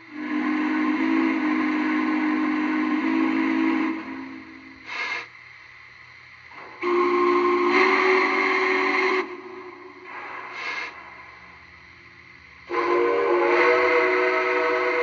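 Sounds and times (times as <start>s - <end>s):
steam chime whistle: 0.0s - 5.2s, 6.8s - 10.0s, 12.7s - 15.0s
hiss of steam: 0.0s - 15.0s.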